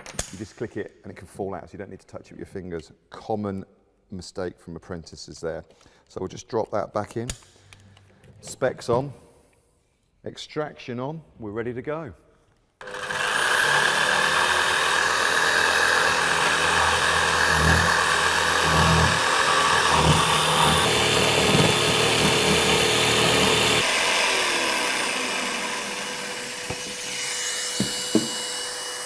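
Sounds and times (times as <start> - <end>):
dust extractor humming: 12.8 - 29.0
jigsaw motor whine: 12.8 - 29.0
saw blade rumbling through work: 12.8 - 29.0.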